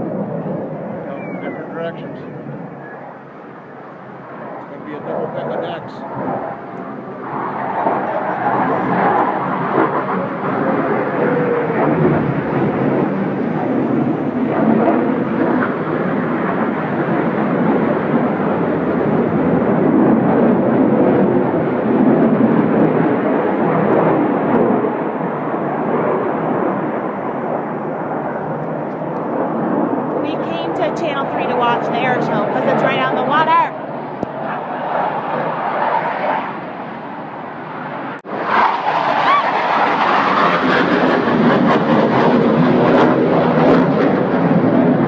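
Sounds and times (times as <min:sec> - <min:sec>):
faint falling whine: 0:00.0 - 0:03.8
jet engines flying overhead: 0:00.0 - 0:45.0.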